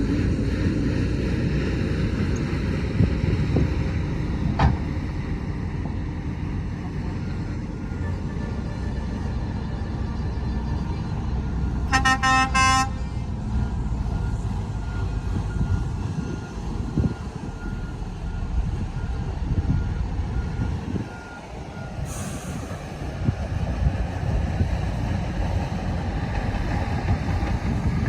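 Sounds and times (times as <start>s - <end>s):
heavy diesel machinery rumbling: 0.0s - 28.0s
horn blasts: 11.9s - 13.1s
reversing alarm beeping: 13.5s - 22.8s.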